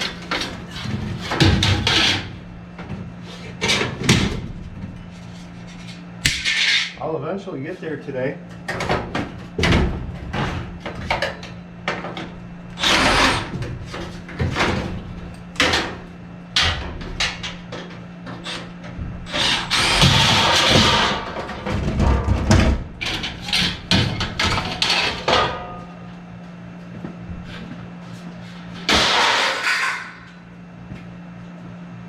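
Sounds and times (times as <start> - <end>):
steady low hum: 0.0 - 32.0.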